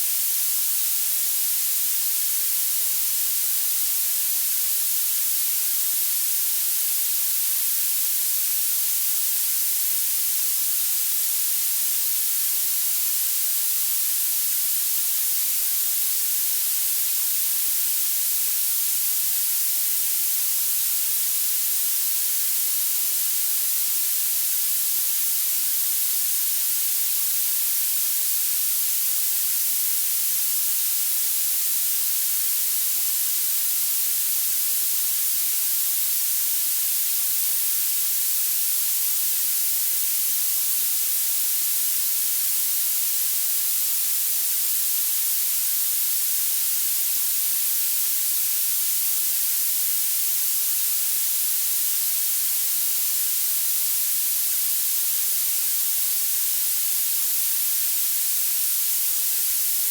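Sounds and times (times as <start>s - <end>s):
bright steady hiss: 0.0s - 59.9s.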